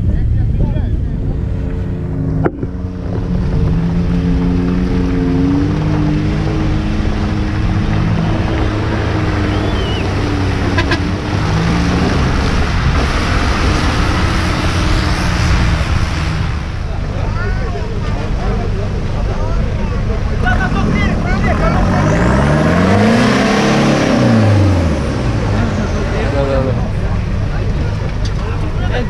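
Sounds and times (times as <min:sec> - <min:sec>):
off-road vehicle engine revving: 0:00.0 - 0:29.0.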